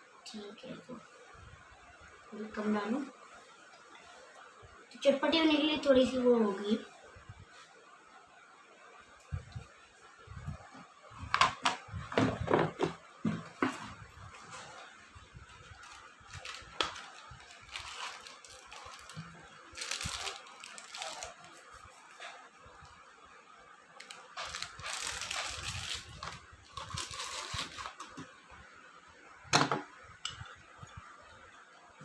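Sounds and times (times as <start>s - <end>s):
snack packets rustling and crinkling: 14.5s - 22.5s, 24.0s - 28.2s.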